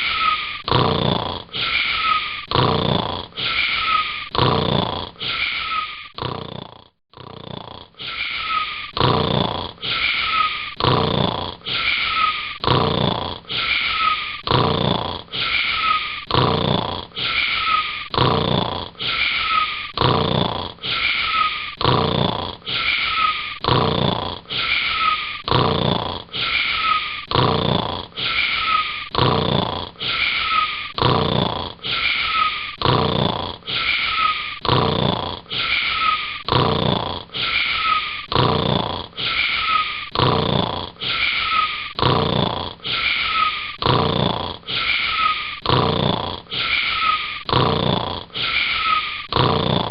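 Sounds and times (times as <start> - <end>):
cartoon snoring: 0.0 - 49.9.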